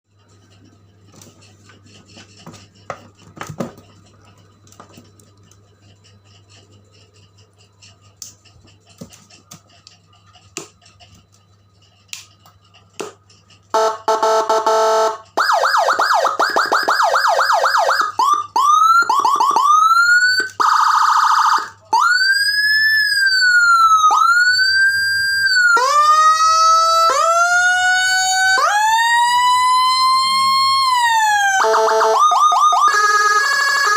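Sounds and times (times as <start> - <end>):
electronic siren horn blast: 13.7 - 22.2, 25.5 - 33.9
siren chirping yelps: 13.8 - 33.9
siren wail rising and falling: 13.8 - 33.9
siren whoops: 13.8 - 33.9.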